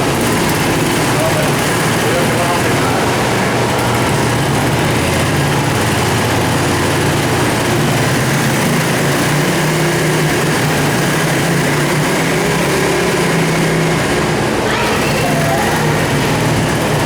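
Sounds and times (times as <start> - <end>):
small two-stroke engine running: 0.0 - 17.0.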